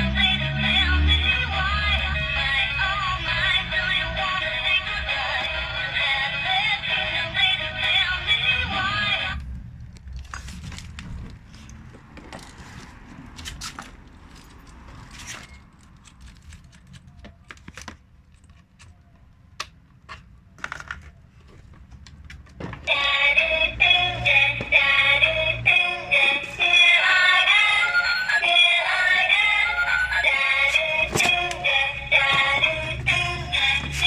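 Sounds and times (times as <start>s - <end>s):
music with synthetic singing voice: 0.0s - 9.4s, 22.8s - 34.0s
plastic toy parts clicking: 15.4s - 21.2s.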